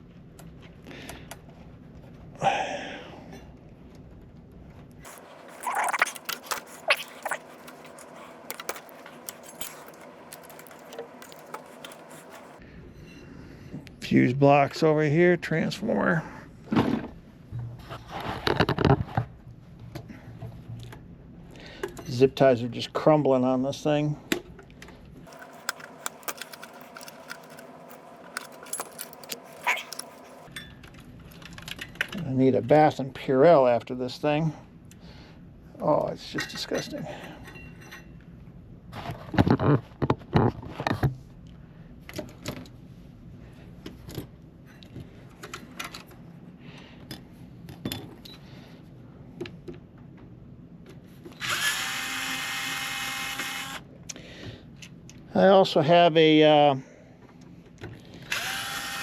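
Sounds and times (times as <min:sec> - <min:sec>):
short squeaks: 0:05.1 - 0:12.6, 0:25.3 - 0:30.5
light metallic rattles: 0:25.3 - 0:30.5
sharp metal clicks: 0:25.3 - 0:30.5.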